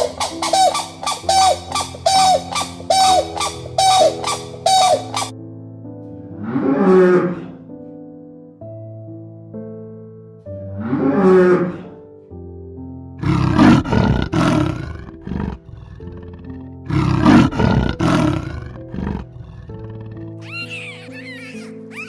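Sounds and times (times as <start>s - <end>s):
soft background music: 0.0s - 22.0s
large animal roaring: 6.4s - 7.6s, 10.8s - 12.0s, 13.2s - 20.4s.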